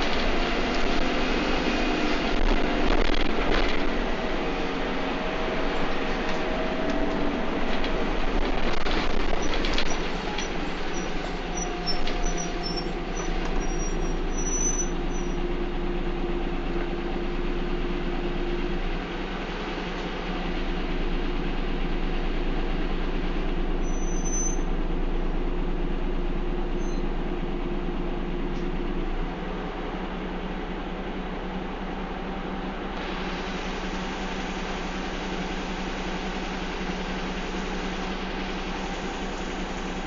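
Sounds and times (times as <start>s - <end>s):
bus engine whine: 0.0s - 40.0s
high squeaks and rattles: 5.8s - 15.4s.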